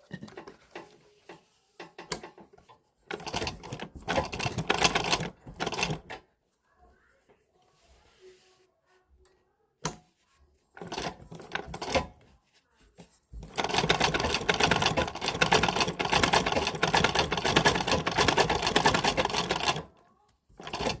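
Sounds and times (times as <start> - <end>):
sewing machine needle clatter: 0.2 - 6.2, 10.8 - 12.2, 13.4 - 21.0.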